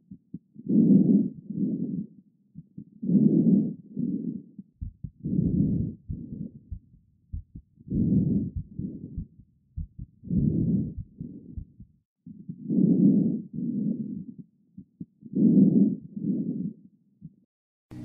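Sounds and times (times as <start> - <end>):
heartbeat thumps: 4.8 - 12.0.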